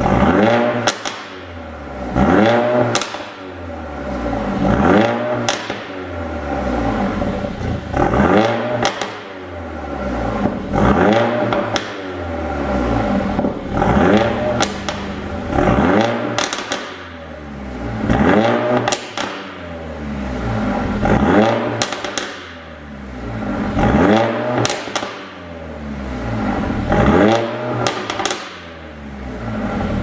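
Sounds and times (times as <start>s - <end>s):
exhaust pops and crackles: 0.0s - 1.5s, 2.2s - 3.4s, 4.6s - 5.9s, 7.4s - 9.3s, 10.4s - 12.2s, 13.1s - 17.2s, 18.0s - 19.6s, 21.0s - 22.6s, 23.8s - 25.3s, 26.9s - 28.7s
car engine revving: 0.0s - 30.0s.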